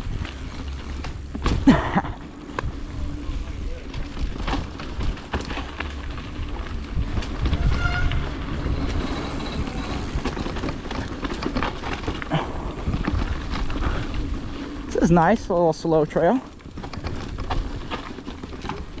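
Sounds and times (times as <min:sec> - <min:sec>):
bike clicks and rattles: 0:00.0 - 0:19.0
tyres rumbling on dirt: 0:00.0 - 0:19.0
wind on microphone: 0:06.1 - 0:10.4.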